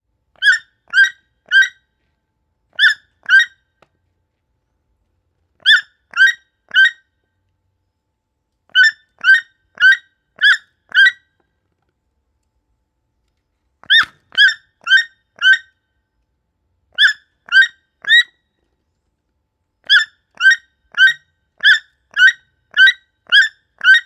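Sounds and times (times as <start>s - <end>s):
toucan harsh yelping calls: 0.4s - 1.8s, 2.8s - 3.6s, 5.6s - 7.0s, 8.8s - 11.2s, 13.9s - 15.7s, 17.0s - 18.3s, 19.9s - 24.0s.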